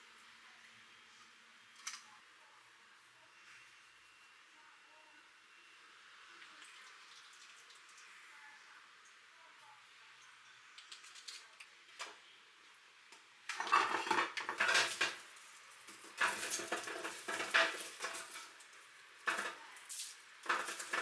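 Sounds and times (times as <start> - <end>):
dishes and utensils clinking: 13.5 - 21.0.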